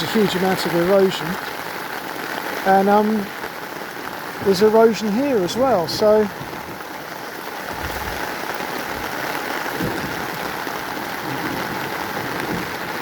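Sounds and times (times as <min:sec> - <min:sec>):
heavy rain: 0:00.0 - 0:13.0
dull thumps: 0:07.7 - 0:10.6.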